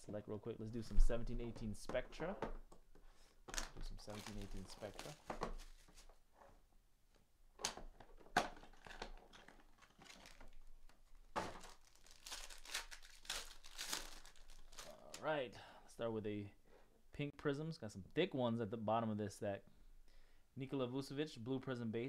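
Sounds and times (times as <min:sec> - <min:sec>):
plastic wrapping tearing and crinkling: 0:03.5 - 0:06.1, 0:08.5 - 0:15.2.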